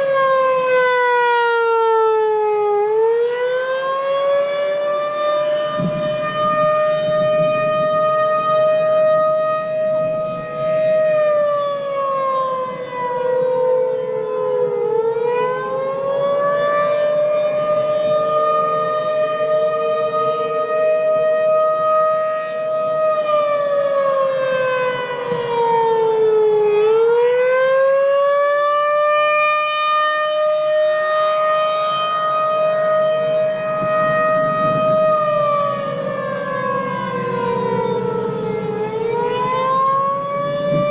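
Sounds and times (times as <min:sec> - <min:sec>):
warning siren wailing: 0:00.0 - 0:40.9.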